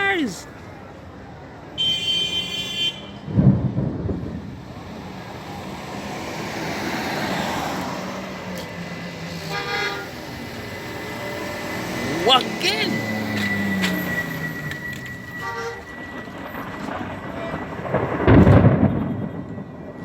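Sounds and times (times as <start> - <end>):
car horn honking: 1.8 - 3.2, 9.5 - 10.4, 12.1 - 16.0
thunder crack and rumble: 3.2 - 9.1, 13.0 - 20.0.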